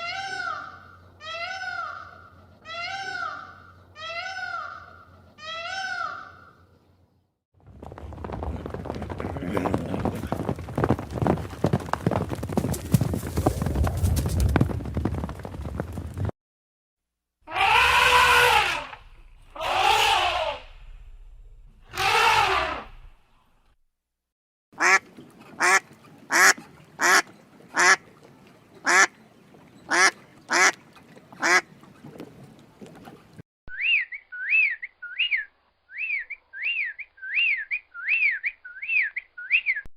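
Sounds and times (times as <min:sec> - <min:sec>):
hooves clopping on hard ground: 0:07.6 - 0:16.3
low rumble: 0:17.8 - 0:23.6
duck quacking: 0:24.8 - 0:25.0, 0:25.6 - 0:28.0, 0:28.8 - 0:29.1, 0:29.9 - 0:30.8, 0:31.4 - 0:31.6
short whistled bird notes: 0:33.7 - 0:39.9.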